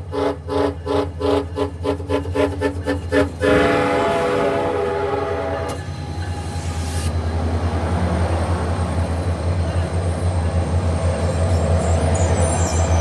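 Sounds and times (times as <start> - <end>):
train horn tooting and blasting: 0.0 - 6.1
train rumble: 0.0 - 13.0.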